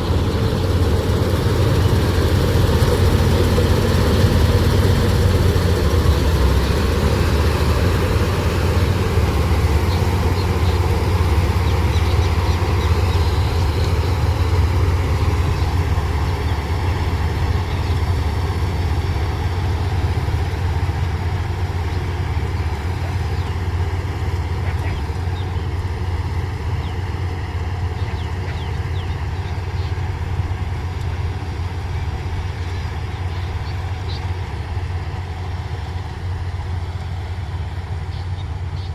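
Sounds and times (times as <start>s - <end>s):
heavy diesel engine running: 0.0s - 38.9s.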